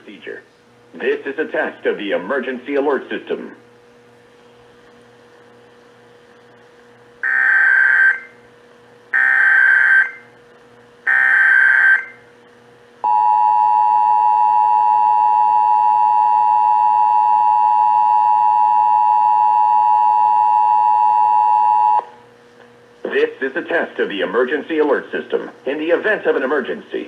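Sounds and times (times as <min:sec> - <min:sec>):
screechy data warble: 0:07.2 - 0:08.3, 0:09.2 - 0:10.2, 0:11.1 - 0:12.2.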